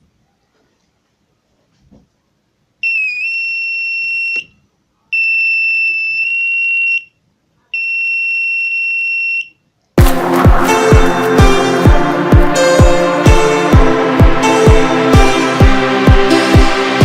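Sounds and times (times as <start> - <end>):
high-pitched alarm buzzer beeps: 2.8 - 4.5, 7.8 - 9.6.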